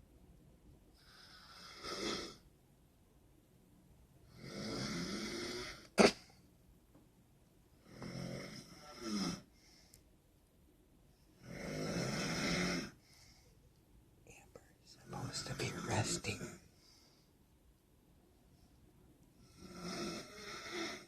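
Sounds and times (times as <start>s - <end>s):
woman snoring loudly: 1.0s - 2.4s, 4.3s - 6.1s, 7.8s - 9.5s, 11.4s - 13.0s, 19.4s - 21.0s.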